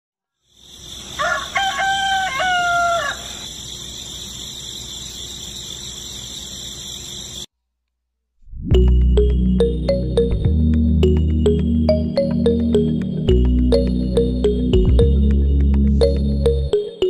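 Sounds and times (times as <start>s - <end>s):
insect-like chirring: 0.4s - 7.5s
rooster crowing: 1.0s - 3.7s.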